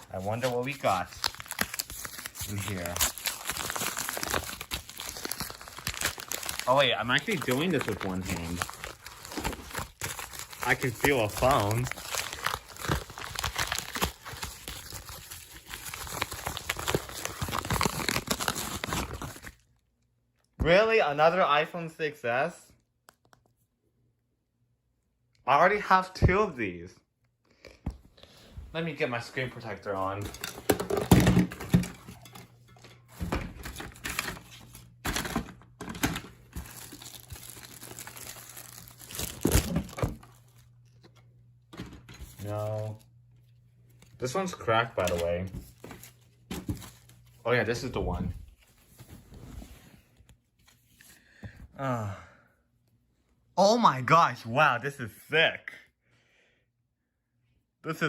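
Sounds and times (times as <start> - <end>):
packaging crinkling and tearing: 0.0 - 19.6, 30.0 - 32.4, 33.5 - 41.2.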